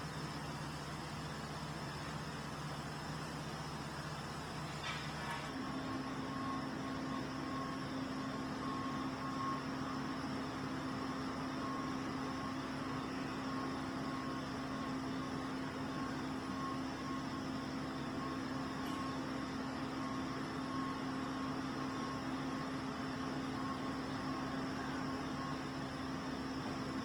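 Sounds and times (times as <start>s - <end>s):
faint high beep: 5.9s - 22.8s.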